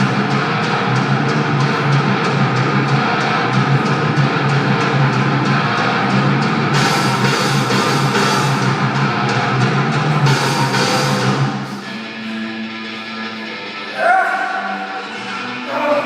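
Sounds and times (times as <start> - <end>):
driving drum beat: 0.0 - 11.8
guitar: 0.0 - 16.0
loud rock music: 0.0 - 16.0.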